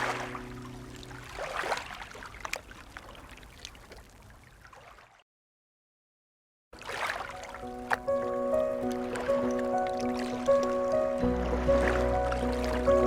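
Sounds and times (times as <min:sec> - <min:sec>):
ocean wave washing: 0:00.0 - 0:03.5, 0:06.8 - 0:13.0.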